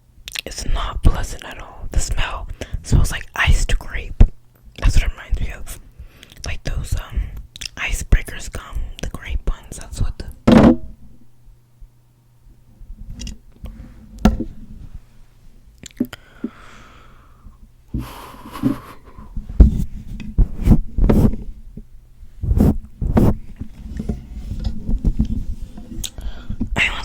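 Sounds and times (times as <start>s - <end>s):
breathy sniff: 18.0s - 19.4s.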